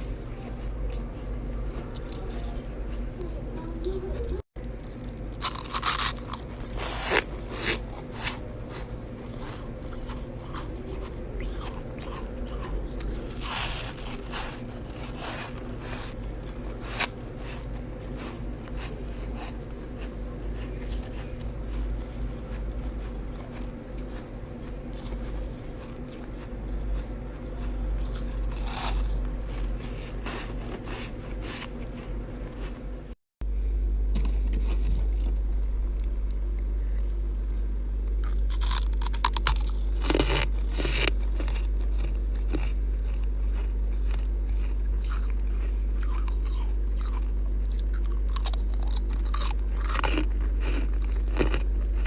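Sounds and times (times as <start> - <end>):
low hum: 0.0 - 52.0
ice crunched between teeth: 4.8 - 26.3, 28.0 - 32.7, 38.2 - 52.0.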